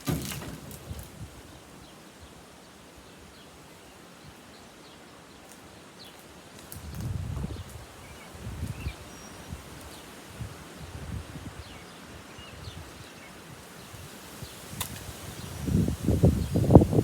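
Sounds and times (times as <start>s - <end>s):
wind buffeting microphone: 0.5s - 1.6s, 6.8s - 13.1s, 13.8s - 17.0s
low gusty rumble: 6.8s - 9.0s.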